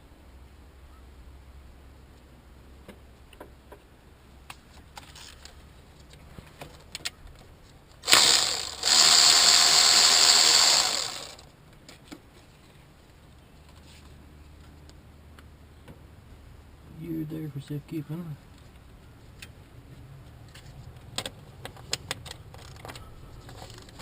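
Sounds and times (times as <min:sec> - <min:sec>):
small motor-driven tool running: 0:08.0 - 0:11.5.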